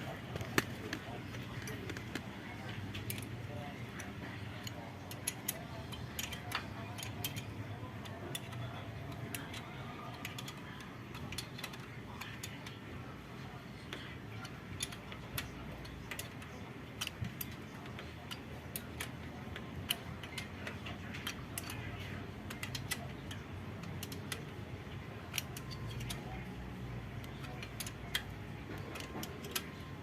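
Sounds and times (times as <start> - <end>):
screwdriver clicking on screw: 13.9 - 24.6, 25.3 - 30.0.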